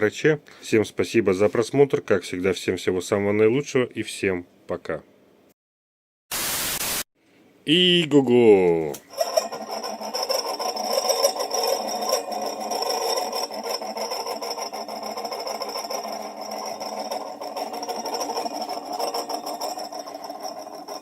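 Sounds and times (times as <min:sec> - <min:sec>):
small electric fan motor whining: 0:09.1 - 0:21.0.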